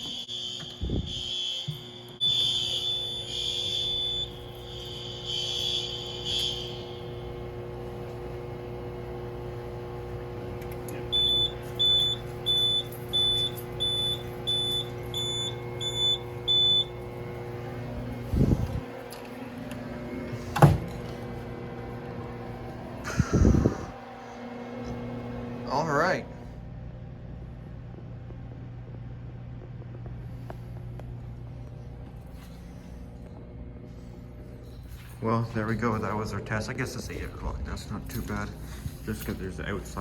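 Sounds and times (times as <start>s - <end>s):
pulsing high alarm tone: 0.0s - 7.6s, 11.1s - 17.0s
steady low hum: 0.0s - 40.0s.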